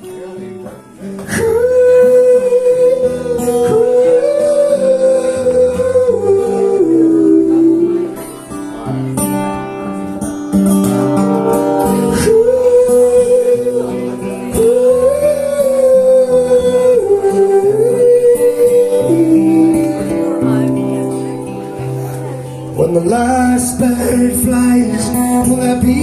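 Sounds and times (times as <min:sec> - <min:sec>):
acoustic guitar: 0:00.0 - 0:26.0
person singing without words: 0:01.2 - 0:08.4, 0:11.6 - 0:20.7, 0:22.7 - 0:26.0.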